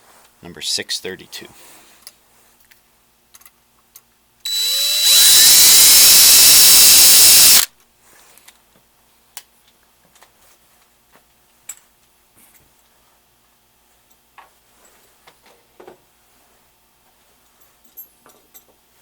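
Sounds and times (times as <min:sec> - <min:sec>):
electric drill whining: 0:04.5 - 0:07.7.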